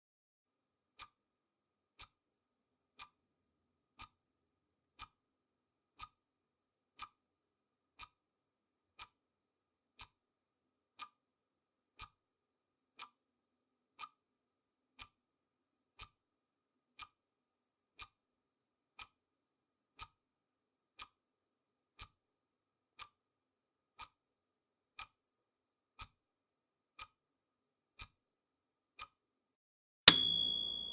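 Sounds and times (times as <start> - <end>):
clock ticking: 30.1 - 30.9.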